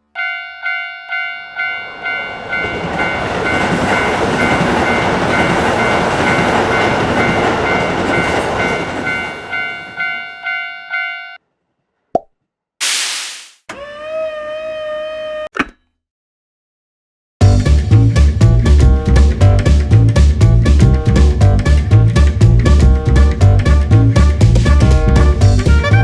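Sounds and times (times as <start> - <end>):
level-crossing warning bell: 0.0 - 11.4
train rushing past: 2.0 - 10.0
short click: 12.8 - 13.6.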